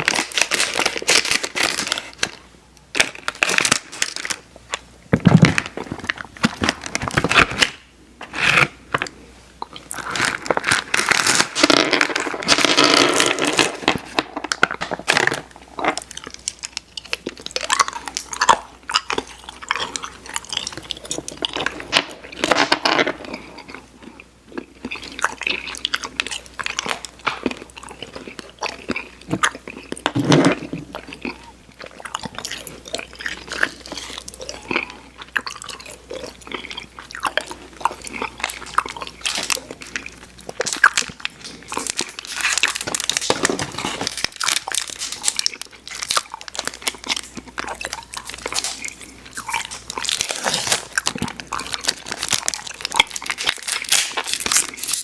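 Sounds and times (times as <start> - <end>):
candy being chewed: 0.0 - 7.8, 8.4 - 55.0.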